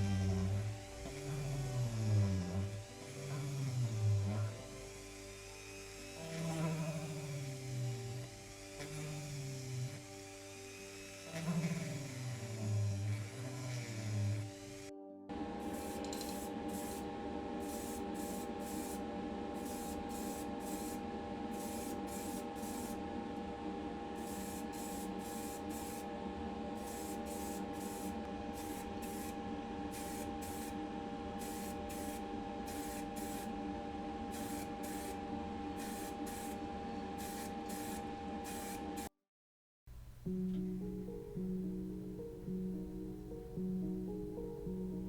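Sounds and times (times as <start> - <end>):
steady hum: 15.3 - 39.1
spray paint hissing: 15.6 - 19.0, 19.6 - 23.0, 24.2 - 26.0, 26.8 - 30.8, 31.4 - 33.6, 34.3 - 35.2, 35.8 - 36.6, 37.2 - 39.1.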